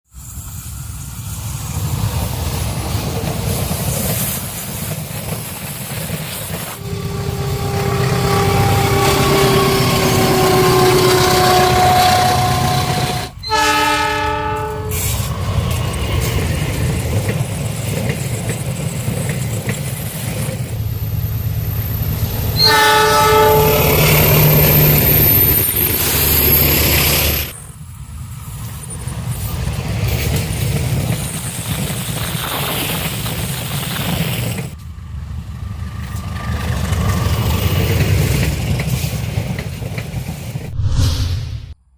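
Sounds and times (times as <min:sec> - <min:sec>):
diesel locomotive engine rumbling: 0:00.1 - 0:32.2
multi-note train horn: 0:06.7 - 0:15.3, 0:22.5 - 0:25.2.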